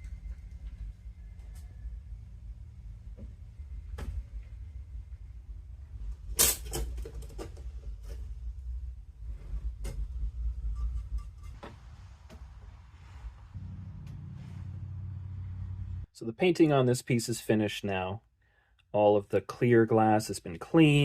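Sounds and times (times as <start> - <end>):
low hum: 0.0 - 16.1.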